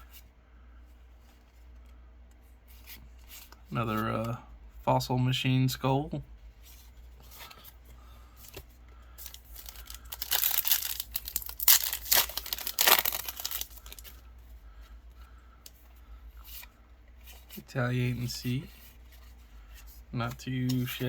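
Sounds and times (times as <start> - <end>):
card handling: 8.4 - 14.2
foil wrapper tearing and crinkling: 9.3 - 14.1.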